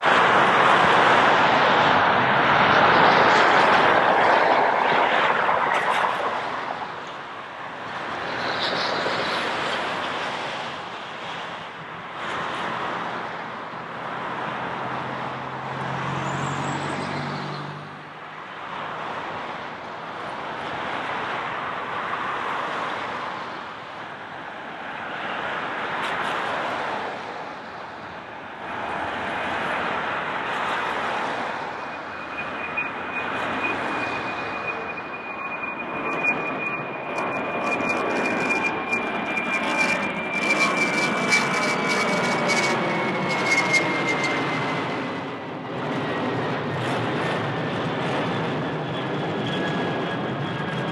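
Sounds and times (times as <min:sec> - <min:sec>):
jet engines roaring: 0:00.0 - 0:50.9.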